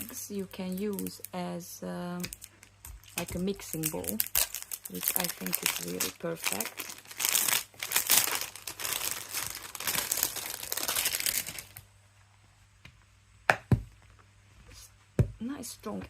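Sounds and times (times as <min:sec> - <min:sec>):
plastic packaging crinkling: 0:00.0 - 0:01.5, 0:02.1 - 0:11.9.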